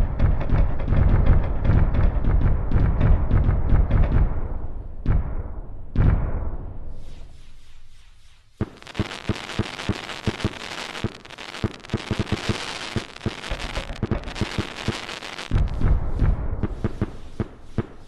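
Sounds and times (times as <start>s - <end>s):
deep firework boom: 8.6s - 17.2s
firework pops and crackles: 8.6s - 18.0s.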